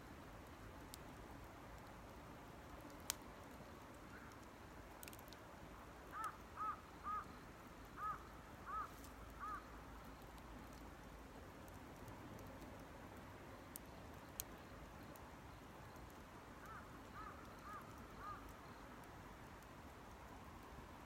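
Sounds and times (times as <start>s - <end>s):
wood fire ticking: 0.8s - 5.5s, 8.9s - 20.2s
crow cawing: 6.1s - 7.3s, 8.0s - 9.7s, 16.6s - 18.4s.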